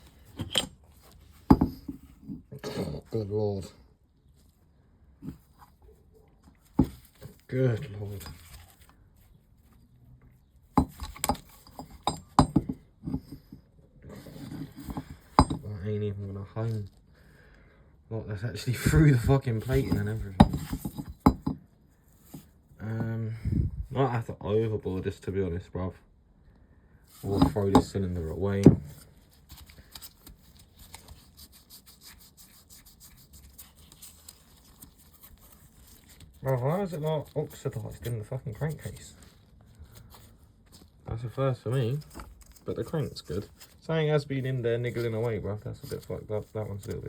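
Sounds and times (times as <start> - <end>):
engine parts rubbing and clicking: 10.8 - 13.6, 18.7 - 21.5, 27.2 - 31.8.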